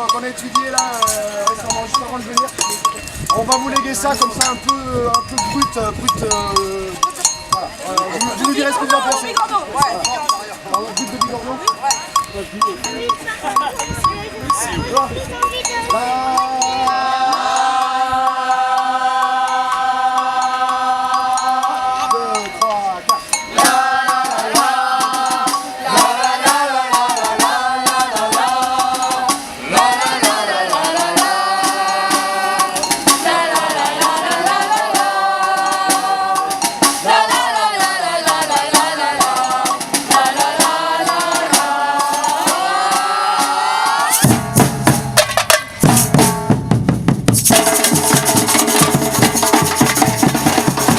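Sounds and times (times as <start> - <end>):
shakers and light percussion: 0.0 - 46.2, 47.2 - 50.9
loud rhythmic drums: 0.0 - 50.9
person singing: 15.8 - 22.7, 23.5 - 44.3.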